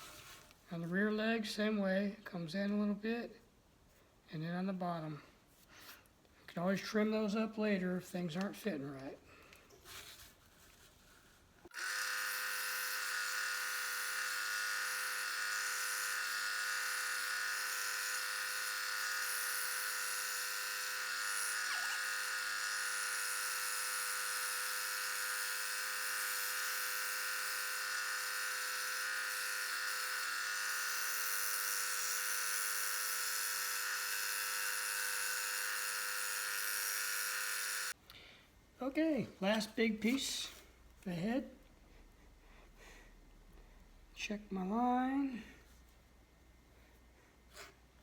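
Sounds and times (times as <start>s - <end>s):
scroll saw cutting plywood: 11.7s - 38.0s.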